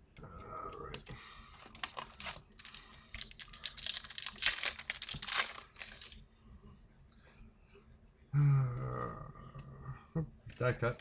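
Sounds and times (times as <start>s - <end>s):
foil wrapper crinkling and tearing: 1.7s - 6.2s.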